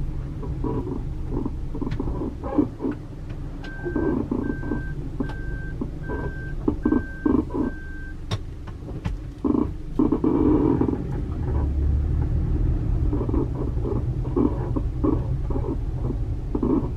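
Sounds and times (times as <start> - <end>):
low vehicle rumble: 0.0 - 16.9
short beeps: 3.7 - 8.2.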